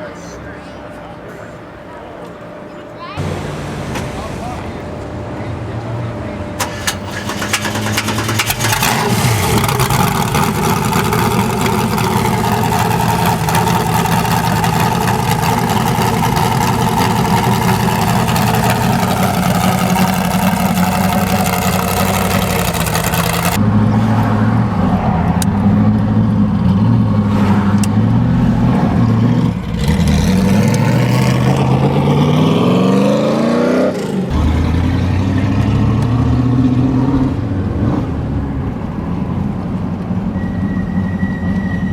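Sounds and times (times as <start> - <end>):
engine throttle blip: 3.2 - 23.6
car engine idling: 3.2 - 32.0
car engine under heavy throttle: 3.2 - 41.9.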